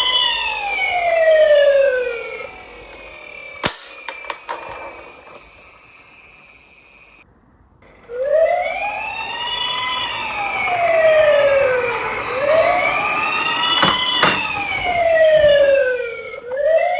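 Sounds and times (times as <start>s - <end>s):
wailing siren: 0.0s - 3.3s, 7.8s - 16.9s.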